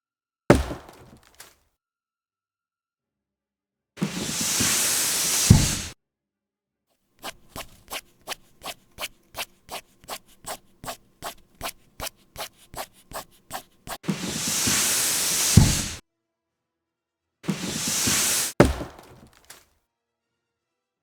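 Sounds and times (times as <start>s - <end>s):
loud hissing: 4.0s - 5.9s, 12.4s - 16.0s, 17.5s - 19.3s
scrubbing strokes: 4.0s - 5.9s, 7.2s - 16.0s, 17.5s - 19.6s
low thump: 4.1s - 5.9s, 14.3s - 16.0s.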